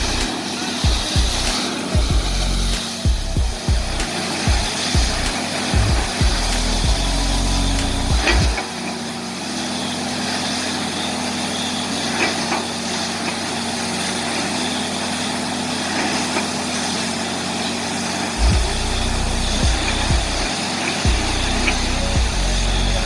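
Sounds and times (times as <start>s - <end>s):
low music beats: 0.0s - 8.7s, 18.4s - 23.0s
drilling rig engine droning: 0.0s - 23.0s.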